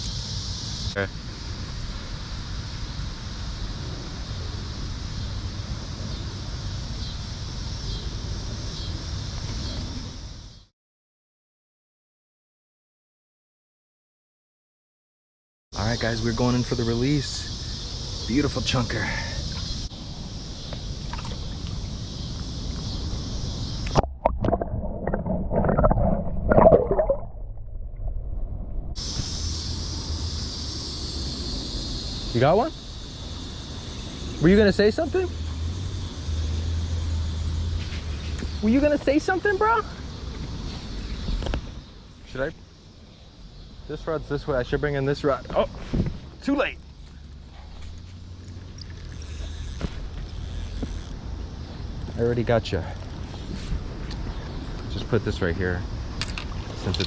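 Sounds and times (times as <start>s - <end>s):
constant high hiss: 0.0s - 10.7s, 15.8s - 24.1s, 29.0s - 57.0s
insect buzzing: 0.0s - 10.7s, 15.8s - 24.1s, 29.0s - 56.9s
water splashing and gurgling: 23.8s - 29.0s
wind rumble on microphone: 45.7s - 46.4s.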